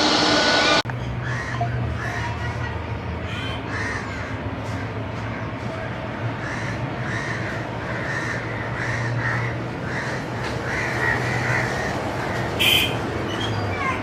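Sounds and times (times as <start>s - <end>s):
crows cawing: 1.2s - 2.6s, 3.6s - 13.0s.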